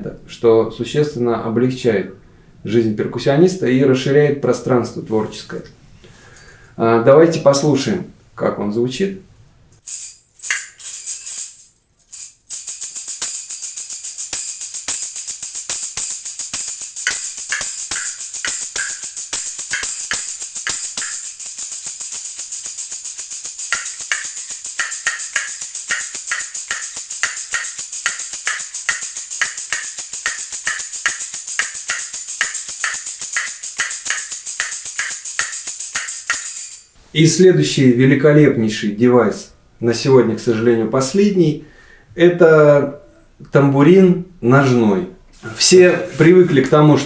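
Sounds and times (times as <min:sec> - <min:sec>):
tambourine jingling: 0:09.7 - 0:37.0.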